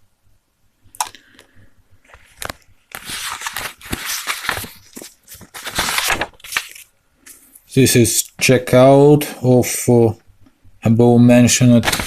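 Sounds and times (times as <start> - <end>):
crinkling handling noise: 1.0 - 7.7, 11.6 - 12.0.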